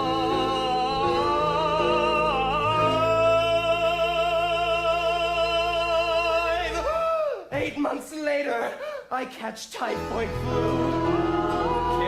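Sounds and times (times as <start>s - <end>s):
instrumental accompaniment: 9.9s - 12.0s.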